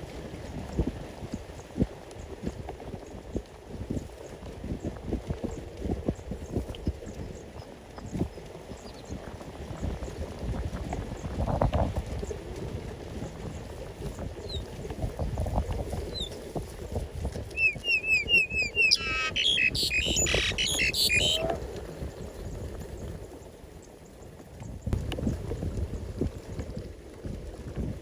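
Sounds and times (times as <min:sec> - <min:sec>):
harsh raspy bird calls: 0:17.6 - 0:21.6
high down-curving bird chirps: 0:17.6 - 0:21.6.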